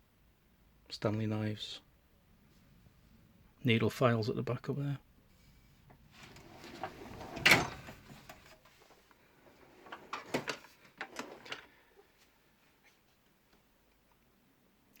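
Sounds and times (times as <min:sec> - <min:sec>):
metal drawer sliding on runners: 0:06.1 - 0:08.5
drawer bumping to a stop: 0:06.3 - 0:08.4.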